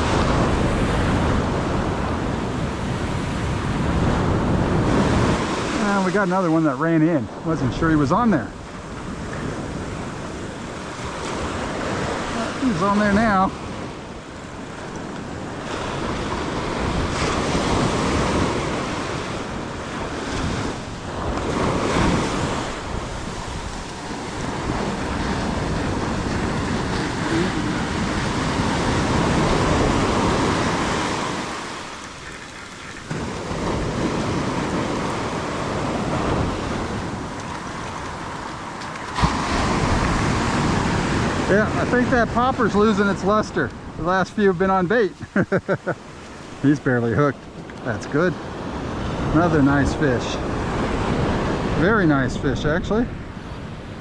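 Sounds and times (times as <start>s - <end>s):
wind buffeting microphone: 0.0s - 6.5s, 7.1s - 44.9s
surf breaking on beach: 0.0s - 54.0s.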